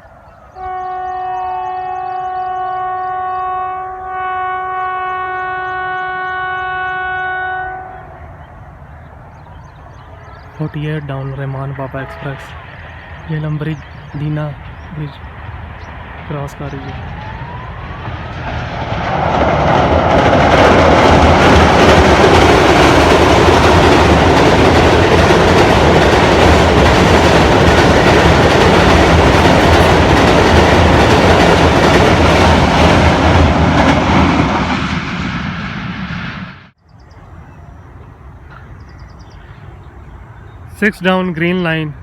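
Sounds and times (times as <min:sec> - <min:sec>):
train rumbling over bridge: 0:00.0 - 0:42.0
wheels clickety-clack: 0:13.7 - 0:34.8.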